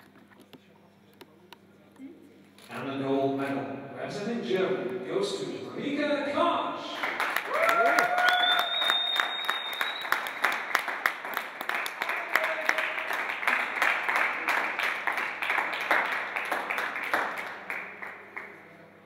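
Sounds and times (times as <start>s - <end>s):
audience applauding: 6.9s - 18.8s.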